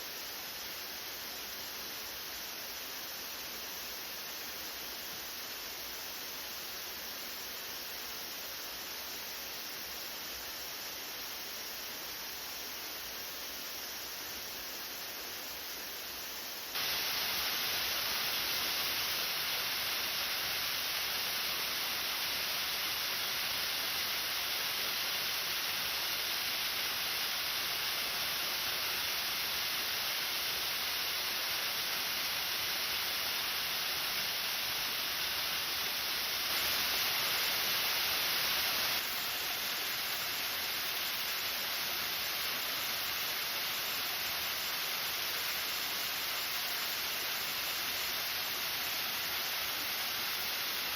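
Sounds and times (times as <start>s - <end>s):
waterfall rushing: 16.8s - 50.9s.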